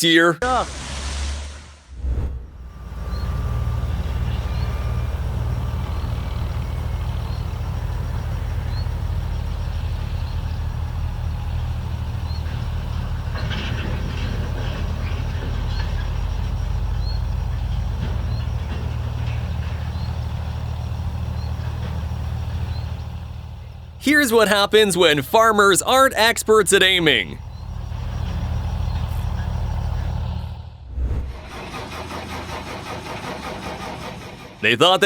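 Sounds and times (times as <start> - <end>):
heavy engine rumbling: 0.4 - 35.0
faint high chirp: 2.7 - 10.6.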